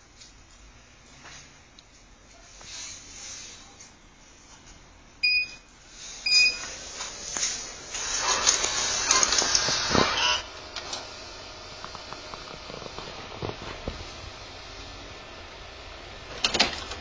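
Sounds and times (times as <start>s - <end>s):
printer beeping: 8.1s - 10.9s.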